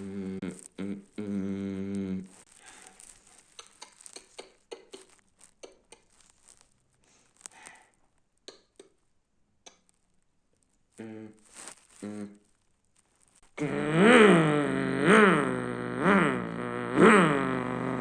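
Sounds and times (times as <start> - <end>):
light crackles and ticks: 1.9 - 10.8.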